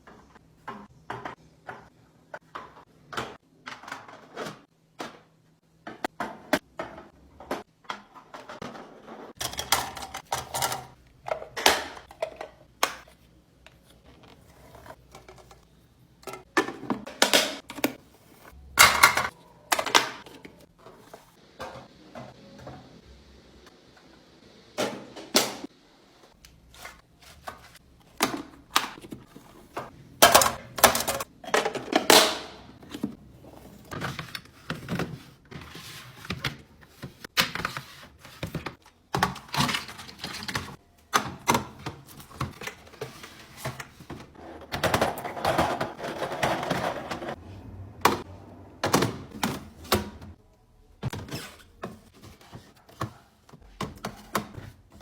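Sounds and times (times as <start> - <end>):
plastic bins clicking and clattering: 0.0 - 22.8, 26.8 - 50.4, 51.0 - 55.0
plastic scraping and rustling: 41.4 - 47.4.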